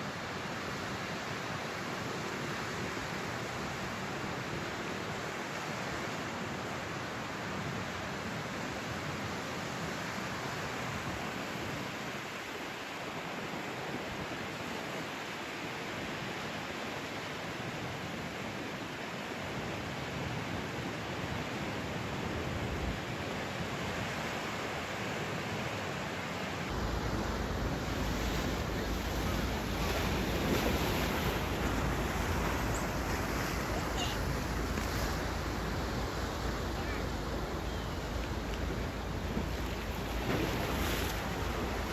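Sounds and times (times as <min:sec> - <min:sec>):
ocean surf on beach: 0:00.0 - 0:41.9
wind rumble on microphone: 0:26.6 - 0:41.9.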